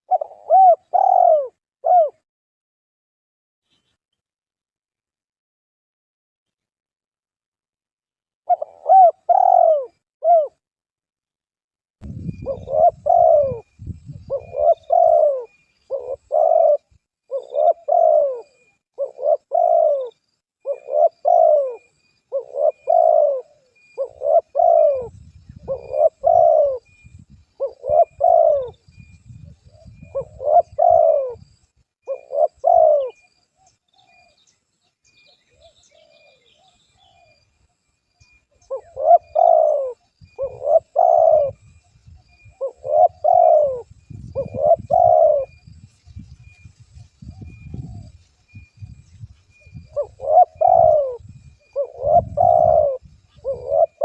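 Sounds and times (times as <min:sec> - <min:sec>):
dove cooing: 0:00.0 - 0:02.2, 0:08.5 - 0:10.6, 0:12.3 - 0:34.4, 0:35.5 - 0:37.4, 0:38.5 - 0:45.8, 0:47.2 - 0:48.2, 0:49.7 - 0:54.0.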